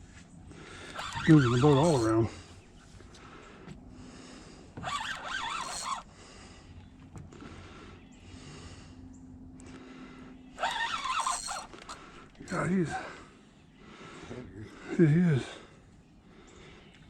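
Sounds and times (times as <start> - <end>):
fishing reel drag screaming: 0.6 - 2.4, 4.2 - 6.5, 10.5 - 13.2.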